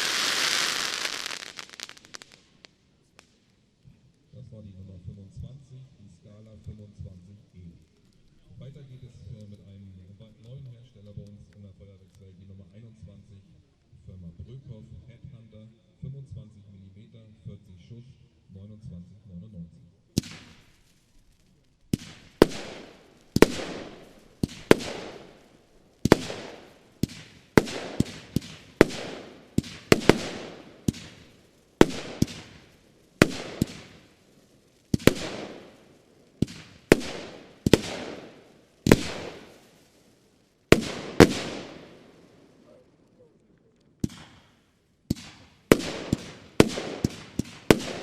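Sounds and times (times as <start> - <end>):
firework battery bangs: 0.0 - 2.7, 20.2 - 20.8, 21.9 - 40.0, 40.7 - 42.3, 44.0 - 48.0.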